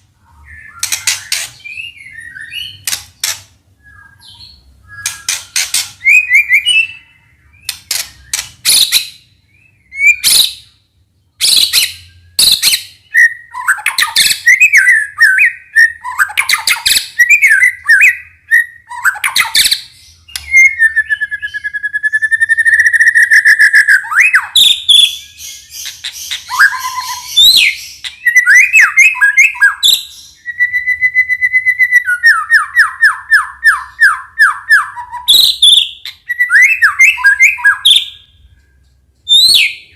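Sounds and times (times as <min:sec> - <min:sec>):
bird whistling song: 0:00.2 - 0:39.9
bird rattling trill: 0:00.8 - 0:01.6, 0:05.0 - 0:06.1.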